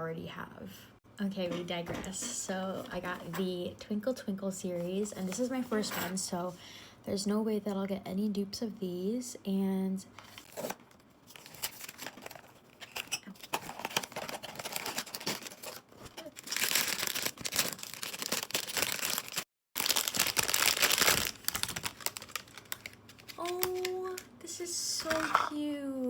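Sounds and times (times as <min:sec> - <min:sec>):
packaging torn and crinkled: 0:10.3 - 0:24.2.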